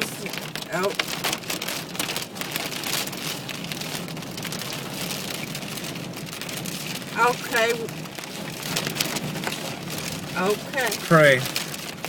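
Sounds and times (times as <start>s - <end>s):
mud and grit pelting a van: 0.0s - 12.0s.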